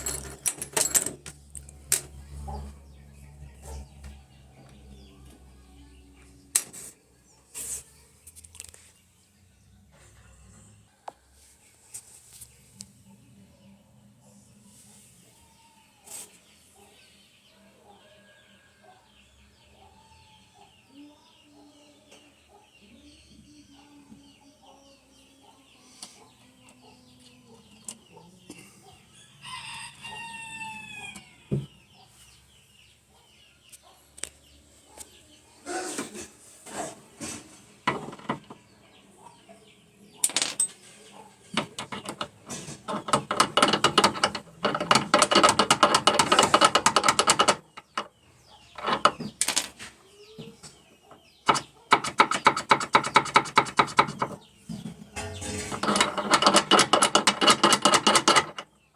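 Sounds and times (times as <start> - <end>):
chickens clucking and cackling: 12.8 - 37.8, 40.8 - 41.6, 54.2 - 56.7
rooster crowing: 29.1 - 31.7.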